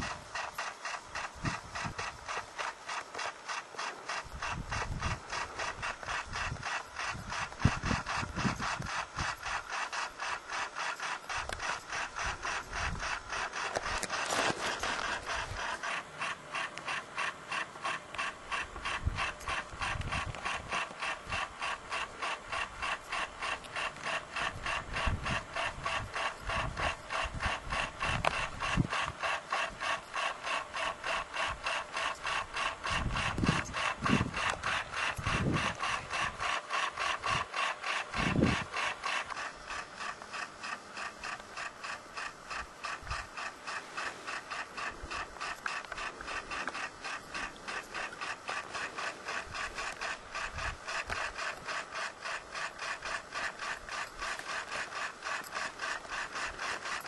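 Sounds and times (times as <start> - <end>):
clothing rubbing on microphone: 11.8 - 15.9.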